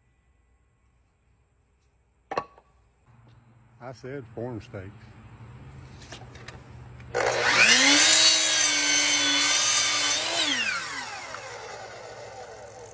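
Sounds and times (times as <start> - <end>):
power saw cutting wood: 7.1 - 12.9.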